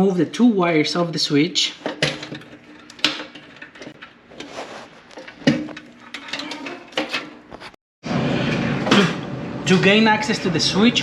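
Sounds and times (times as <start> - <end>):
clicks and knocks of hands working: 1.9 - 7.7.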